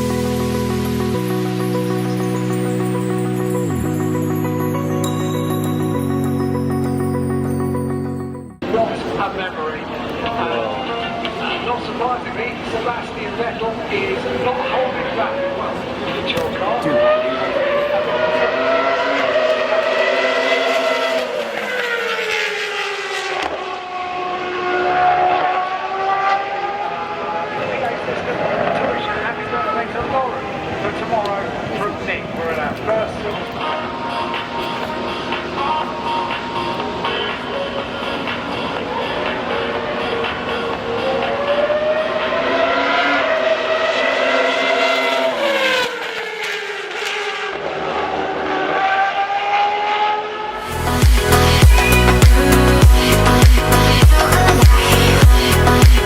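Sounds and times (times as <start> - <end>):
racing car engine at high revs: 14.2 - 29.2, 39.4 - 56.0.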